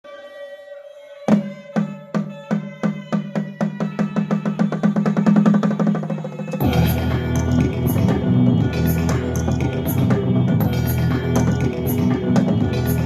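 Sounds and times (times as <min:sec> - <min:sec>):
held pitched note: 0:06.3 - 0:13.0.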